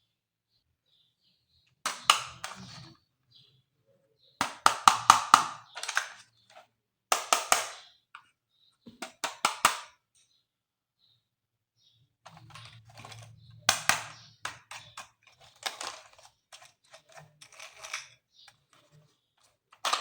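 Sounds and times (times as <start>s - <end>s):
plastic toy parts clicking: 1.8s - 2.8s, 4.4s - 7.8s, 12.3s - 18.6s, 19.7s - 20.0s.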